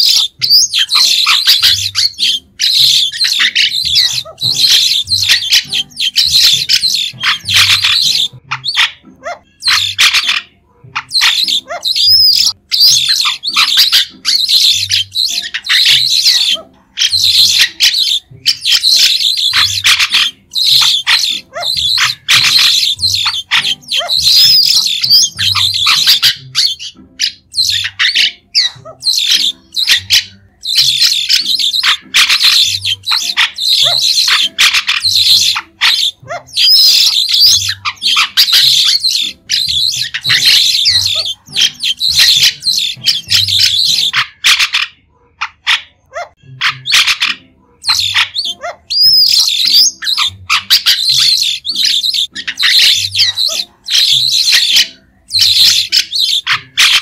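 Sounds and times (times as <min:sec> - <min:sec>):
starlings chirping and squawking: 0:00.0 - 0:57.0.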